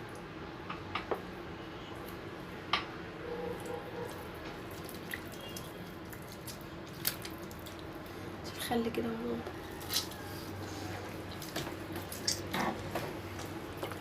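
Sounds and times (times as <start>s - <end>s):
water dripping and splashing: 3.6s - 8.2s, 11.2s - 14.0s.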